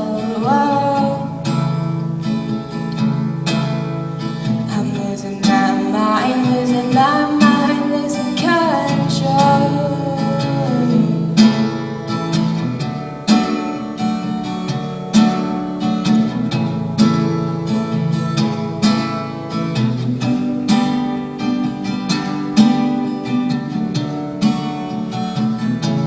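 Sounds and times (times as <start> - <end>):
acoustic guitar strumming: 0.0 - 26.0.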